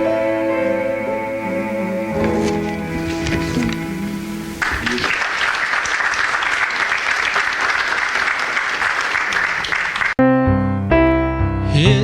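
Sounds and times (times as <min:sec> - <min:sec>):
congregation applauding: 0:04.5 - 0:10.2.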